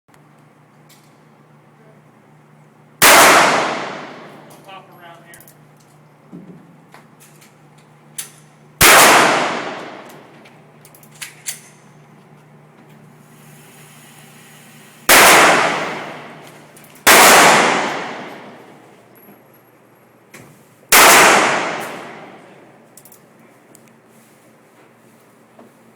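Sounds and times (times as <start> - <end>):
gunshots with ringing decay: 3.0 - 4.4, 8.8 - 10.0, 15.1 - 16.4, 17.0 - 18.8, 20.9 - 22.5.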